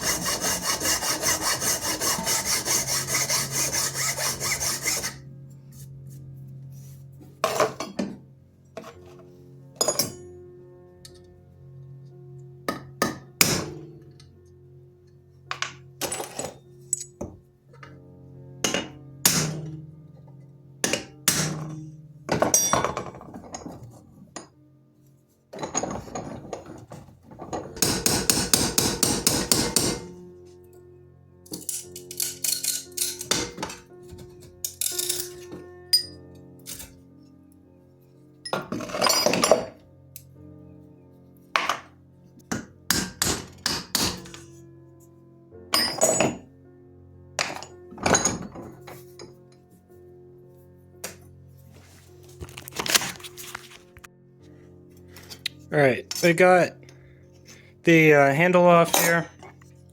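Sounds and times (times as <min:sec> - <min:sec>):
background music: 0:00.0 - 0:59.9
hammer striking metal knife: 0:18.6 - 0:19.8, 0:20.8 - 0:23.0, 0:27.8 - 0:30.1, 0:42.5 - 0:44.4.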